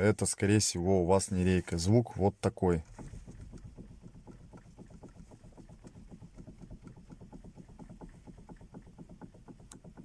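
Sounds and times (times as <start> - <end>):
rapid light knocking: 2.8 - 10.0.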